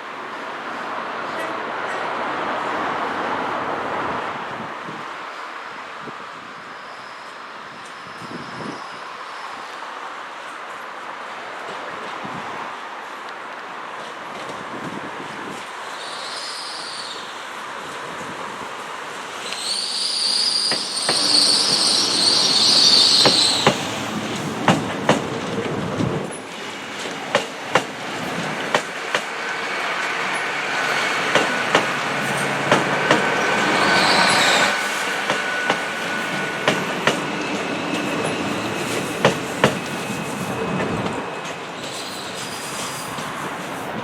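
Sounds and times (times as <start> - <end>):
train wheels squealing: 6.4 - 9.9, 15.8 - 17.6, 19.4 - 25.1, 29.4 - 43.8.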